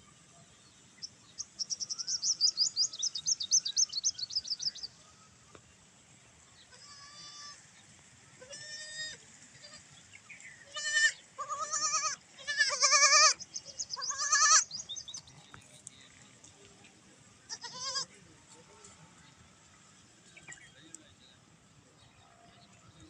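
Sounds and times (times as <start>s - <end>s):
baby goats bleating: 6.7s - 7.6s, 8.4s - 9.9s, 10.6s - 13.4s, 14.0s - 14.7s, 17.5s - 18.1s.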